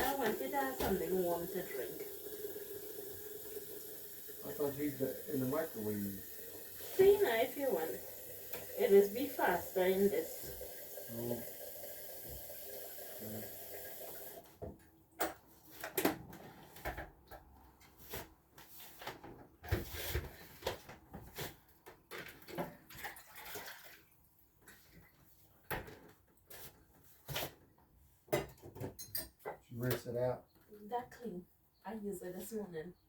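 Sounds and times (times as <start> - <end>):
tap water running: 0.0 - 14.7, 22.6 - 24.9
dishes knocking and clicking: 28.3 - 30.0.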